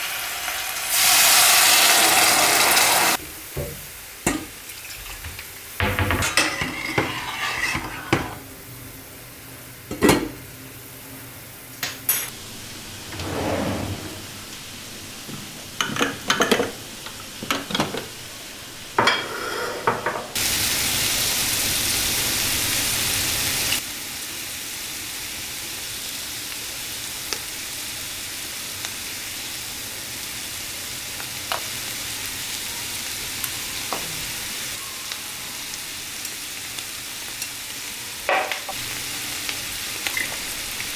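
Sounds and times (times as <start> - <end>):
food sizzling in a frying pan: 0.0 - 12.4, 14.5 - 40.9
utensils clinking on a pan: 4.3 - 8.4, 11.8 - 12.4, 15.3 - 18.2, 18.9 - 20.4, 38.2 - 38.8.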